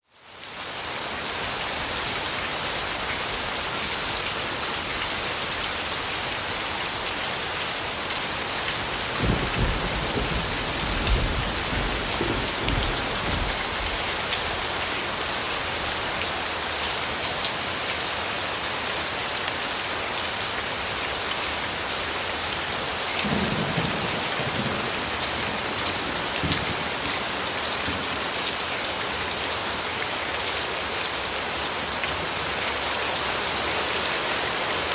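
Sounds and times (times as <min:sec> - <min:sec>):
heavy rain falling: 0:00.0 - 0:34.9
low rumbles of thunder: 0:09.0 - 0:14.1.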